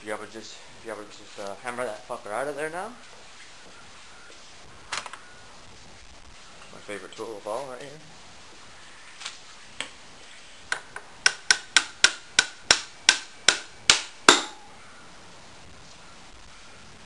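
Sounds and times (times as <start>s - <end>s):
hammer striking metal spindle: 11.2s - 14.7s.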